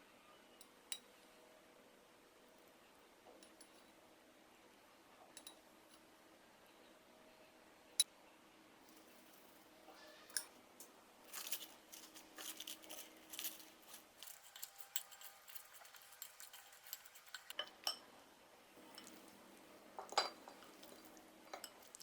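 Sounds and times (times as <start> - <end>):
salad ingredients rustling: 11.3 - 17.6, 18.8 - 22.0
kitchen utensils clicking and tapping: 11.3 - 18.1, 18.9 - 19.3, 20.0 - 22.0.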